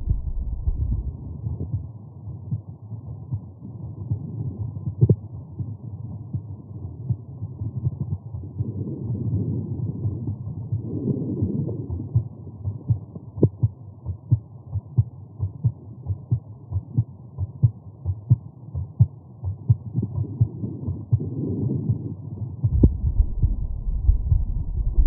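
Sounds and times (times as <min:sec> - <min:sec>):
heartbeat thumps: 0:00.0 - 0:01.9, 0:11.9 - 0:25.0.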